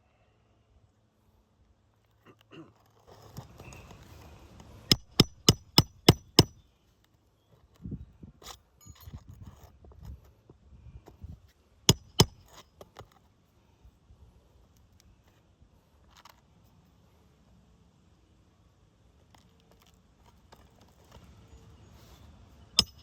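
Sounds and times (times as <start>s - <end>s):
scraping and rustling: 2.7s - 4.8s
hammer striking nail: 4.9s - 6.6s, 11.9s - 12.4s, 22.8s - 23.0s.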